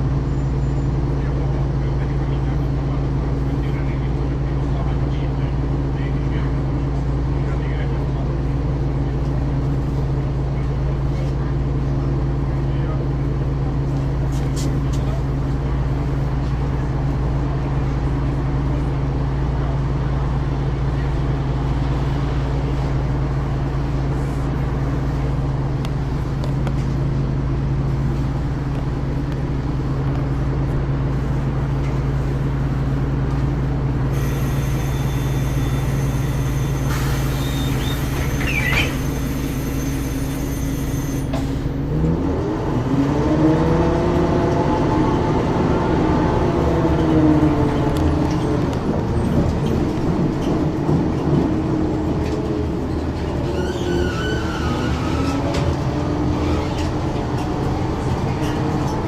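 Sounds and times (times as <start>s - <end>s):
bus diesel engine idling: 0.0s - 41.9s, 45.4s - 54.8s
bus engine revving: 33.2s - 59.0s.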